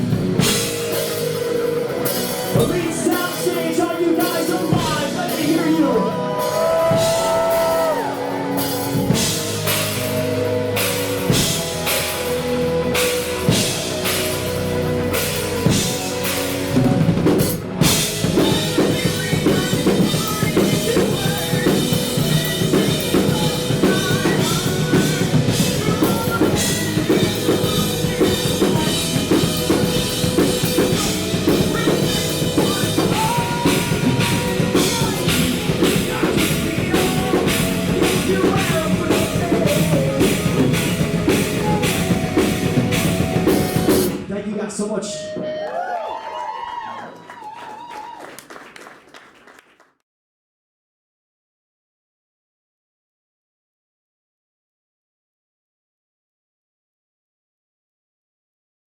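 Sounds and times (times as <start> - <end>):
fast drum beat: 0.0 - 44.3
rock band playing: 0.0 - 44.5.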